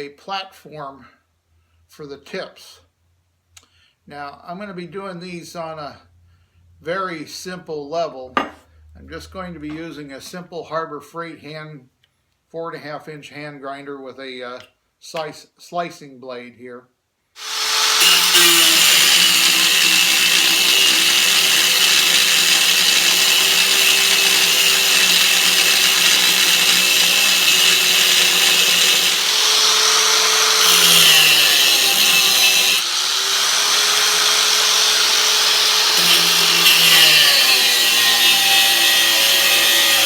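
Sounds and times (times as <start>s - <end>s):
angle grinder cutting metal: 17.4s - 40.0s.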